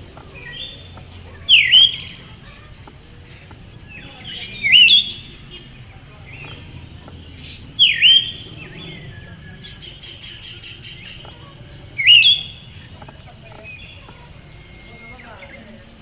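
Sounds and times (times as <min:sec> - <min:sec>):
faint background chirping: 0:00.0 - 0:16.0
thrush calls: 0:00.0 - 0:16.0.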